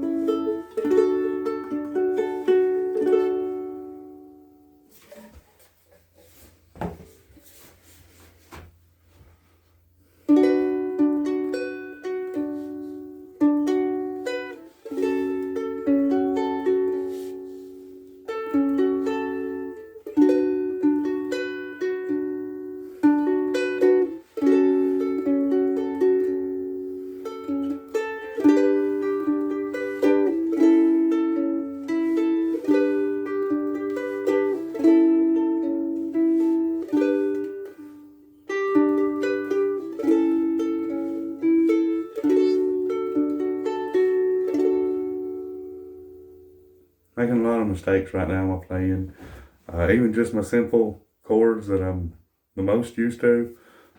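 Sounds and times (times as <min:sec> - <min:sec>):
ukulele chords and melody: 0:00.0 - 0:05.3, 0:10.0 - 0:47.0.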